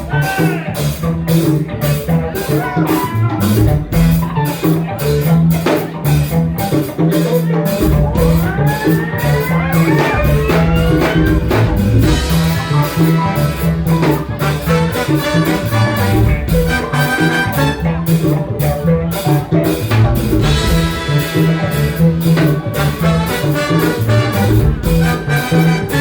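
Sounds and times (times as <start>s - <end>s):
bass: 0.0s - 26.0s
drum kit steady beat: 0.0s - 26.0s
horns: 7.7s - 18.6s, 19.9s - 26.0s.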